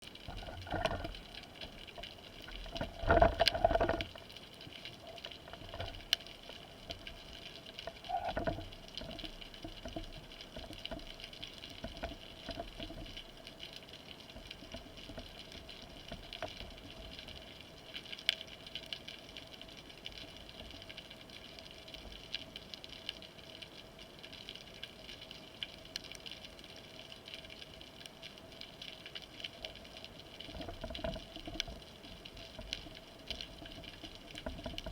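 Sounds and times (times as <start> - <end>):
underwater clicks: 0.2 - 4.4
underwater crackling hiss: 0.3 - 22.1.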